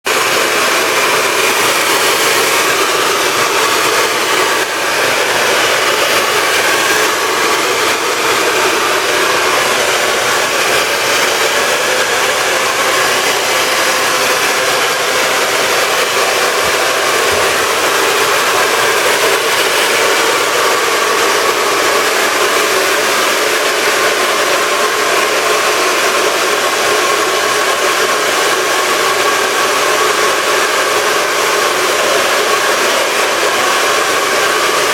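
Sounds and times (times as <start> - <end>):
hair dryer blowing: 0.0 - 34.9.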